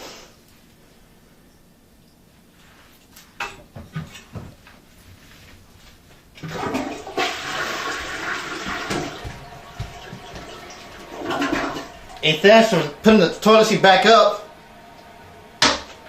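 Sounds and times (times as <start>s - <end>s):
toilet flushing: 6.4s - 16.0s.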